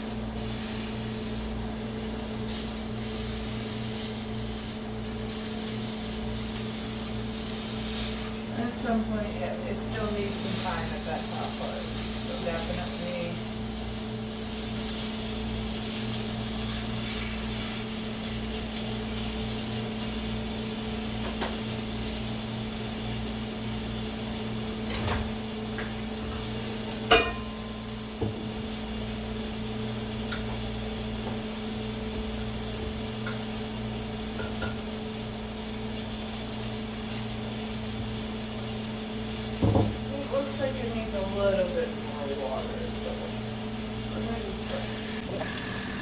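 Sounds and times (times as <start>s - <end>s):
chicken sizzling in a pan: 0.0s - 46.0s
constant low hum: 24.8s - 28.9s
utensils clinking on cookware: 24.9s - 27.9s, 33.2s - 33.6s, 34.4s - 34.9s.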